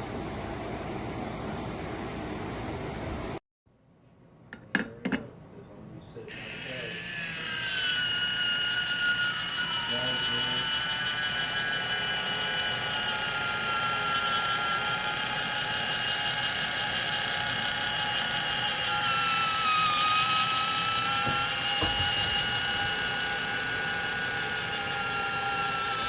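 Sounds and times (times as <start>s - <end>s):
electric can opener motor whining: 6.3s - 26.0s.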